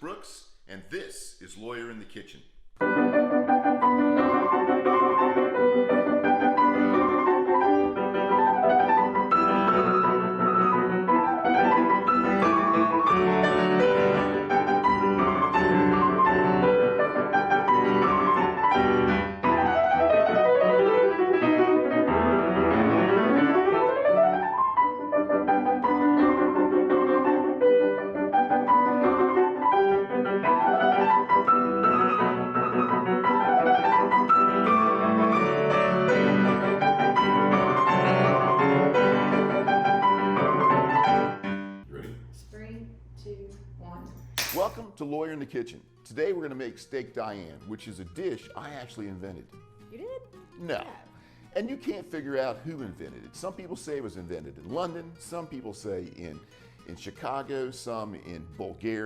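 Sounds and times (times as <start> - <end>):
piano music with fast runs: 2.9 - 41.8.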